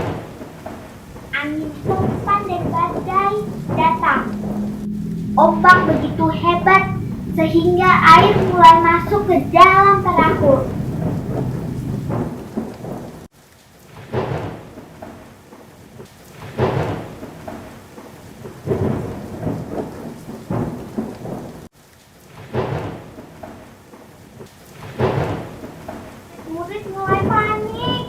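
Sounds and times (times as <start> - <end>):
thunder rumbles: 0.0 - 13.3
rain: 0.0 - 28.0.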